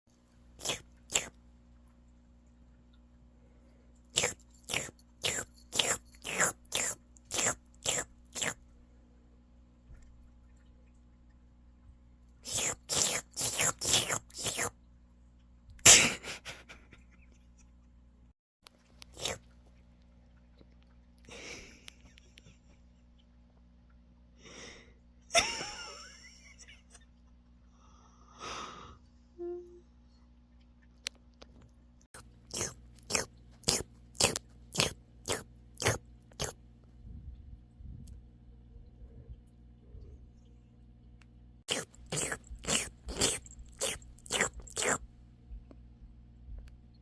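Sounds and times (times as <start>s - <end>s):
person making wet licking noises: 0.6s - 1.4s, 4.1s - 8.6s, 12.4s - 14.7s, 18.7s - 19.6s, 32.2s - 36.6s, 41.7s - 45.0s.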